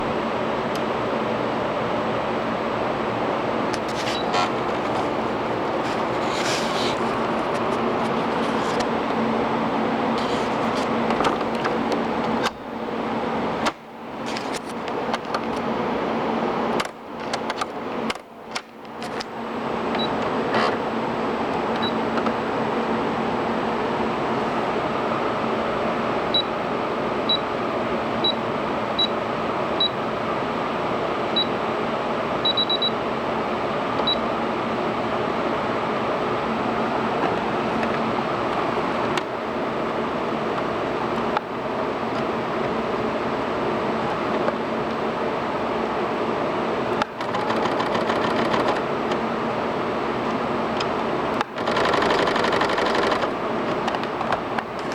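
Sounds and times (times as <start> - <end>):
sewing machine hum and whirr: 0.0 - 25.9, 32.4 - 53.8
sewing machine clattering: 47.0 - 48.9, 51.4 - 53.4.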